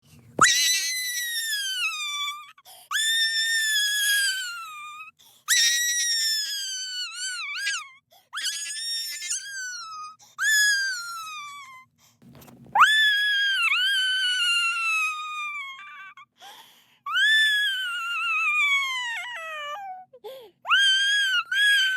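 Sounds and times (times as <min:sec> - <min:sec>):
breaths: 0:02.6 - 0:02.9, 0:05.2 - 0:05.5, 0:16.4 - 0:17.1, 0:20.2 - 0:20.6.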